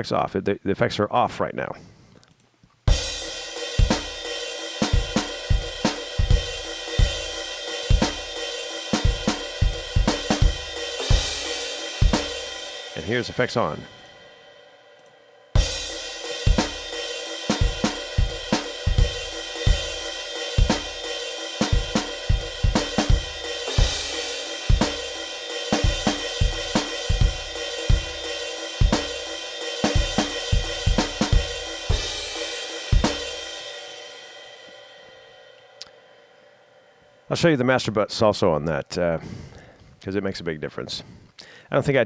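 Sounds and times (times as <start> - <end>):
hi-hat: 2.9 - 13.1, 15.6 - 33.9
snare drum: 2.9 - 13.4, 15.6 - 33.6
cymbals ringing: 2.9 - 37.6
kick drum: 30.0 - 32.2.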